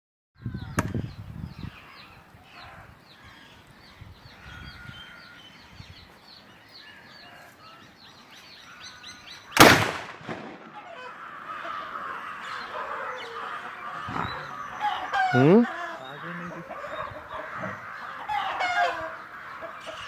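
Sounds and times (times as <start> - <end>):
small birds chirping: 0.4 - 9.7, 10.5 - 20.0
sharp click: 0.8 - 1.0.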